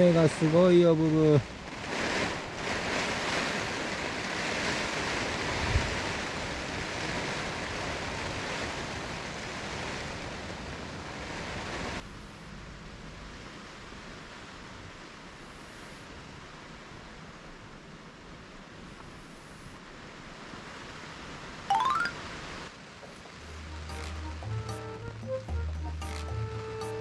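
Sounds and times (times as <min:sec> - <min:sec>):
heavy rain pouring: 0:01.6 - 0:10.6.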